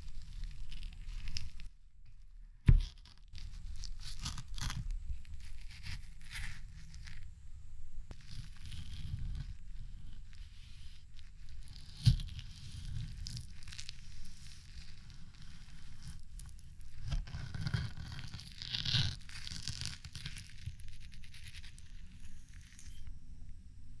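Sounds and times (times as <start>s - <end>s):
knife cutting frozen jelly: 2.6s - 7.2s, 11.4s - 23.0s.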